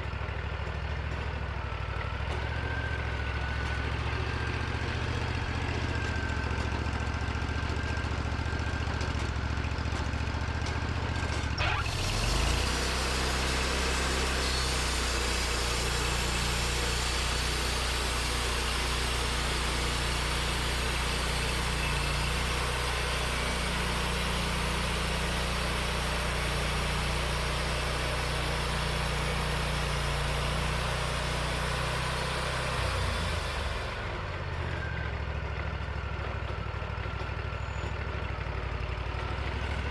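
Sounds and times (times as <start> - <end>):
sawmill engine: 0.0 - 39.9
band saw blade cutting log: 11.3 - 33.9.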